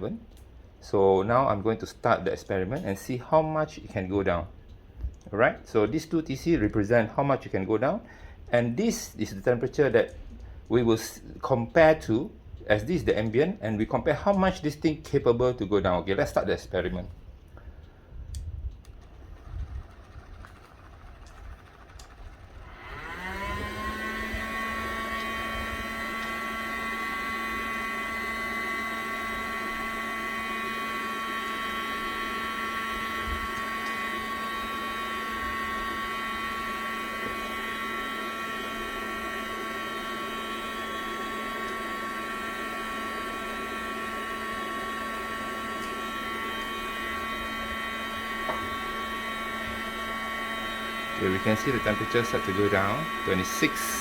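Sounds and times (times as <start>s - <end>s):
small electric motor whining: 18.7s - 54.0s.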